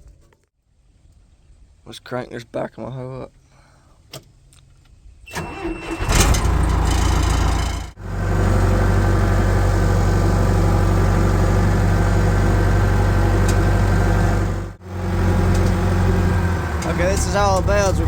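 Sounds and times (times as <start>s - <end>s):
diesel engine idling: 5.4s - 18.0s
diesel engine running rough: 5.4s - 18.0s.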